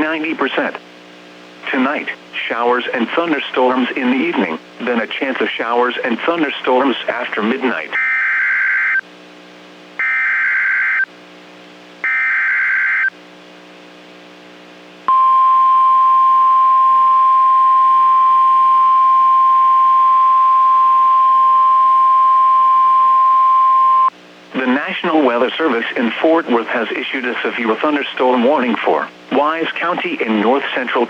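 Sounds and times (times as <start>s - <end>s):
buzzy data tones: 10.0s - 11.1s, 12.0s - 13.1s
steady warning alarm tone: 10.0s - 11.1s, 12.0s - 13.1s.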